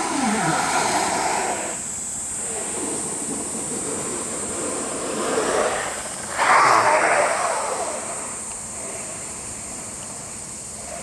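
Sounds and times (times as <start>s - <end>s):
board sliding on snow: 0.0s - 1.8s, 2.4s - 9.2s.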